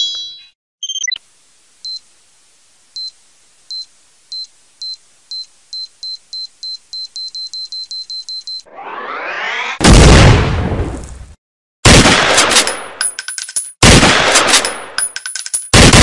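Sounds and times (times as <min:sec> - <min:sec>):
high electronic beeps: 0:00.8 - 0:01.2.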